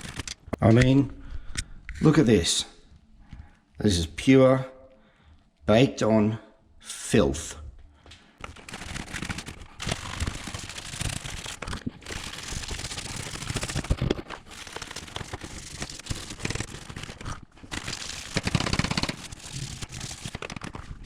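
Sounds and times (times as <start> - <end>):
scrubbing scratchy crackle: 0.0 - 1.0, 8.4 - 21.0.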